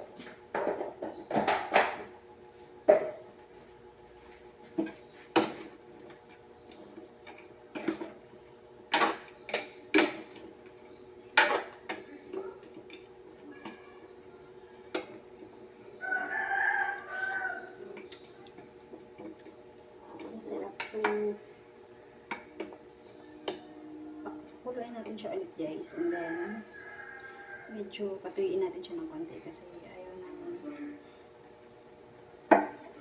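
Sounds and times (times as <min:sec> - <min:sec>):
low hum: 0:00.0 - 0:33.0
rooster crowing: 0:16.0 - 0:18.0, 0:25.8 - 0:27.9.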